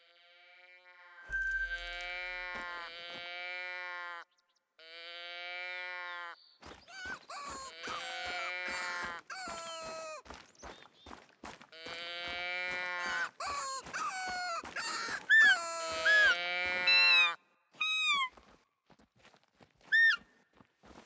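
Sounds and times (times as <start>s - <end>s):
high-pitched held cries: 13.4s - 18.4s.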